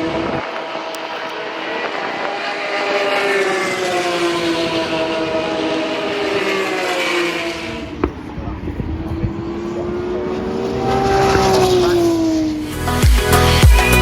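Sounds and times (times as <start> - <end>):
low engine rumble: 0.0 - 14.0
racing car engines at high revs: 0.0 - 14.0.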